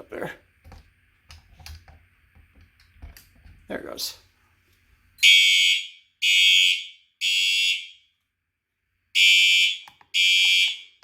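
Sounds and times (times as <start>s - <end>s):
fire alarm horn blasts: 5.2s - 8.1s, 9.2s - 11.0s.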